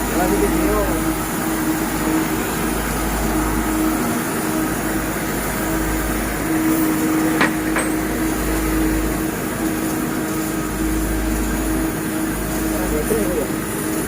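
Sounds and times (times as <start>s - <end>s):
ship engine running: 0.0s - 14.0s
sharp knocks: 7.3s - 8.2s.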